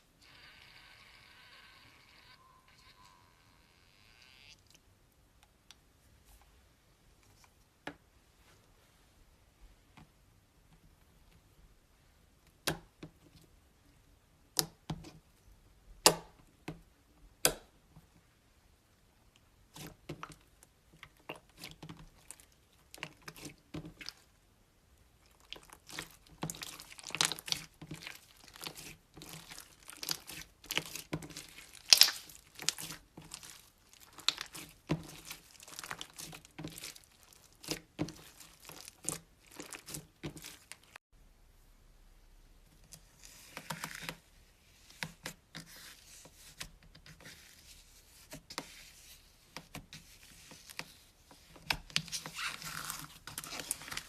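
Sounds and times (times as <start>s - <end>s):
slime squelching and crackling: 19.6s - 24.4s, 25.0s - 41.0s, 49.7s - 54.0s.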